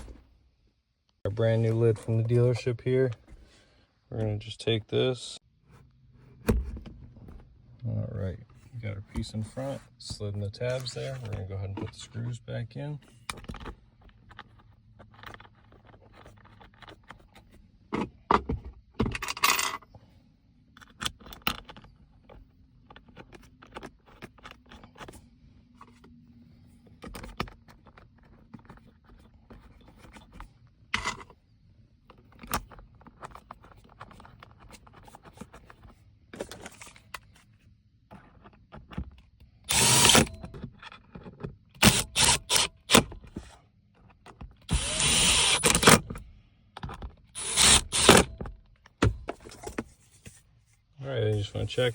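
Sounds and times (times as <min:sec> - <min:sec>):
clicks and knocks of plastic parts: 0:13.2 - 0:19.8, 0:20.7 - 0:25.2, 0:26.9 - 0:31.4, 0:32.0 - 0:37.4, 0:38.1 - 0:50.4
cordless drill driving screws: 0:39.7 - 0:40.4, 0:41.8 - 0:43.1, 0:44.7 - 0:46.1, 0:47.4 - 0:48.3.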